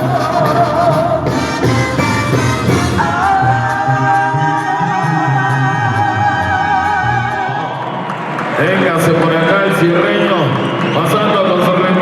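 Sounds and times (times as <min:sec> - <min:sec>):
repeating bass line: 0:00.0 - 0:08.0.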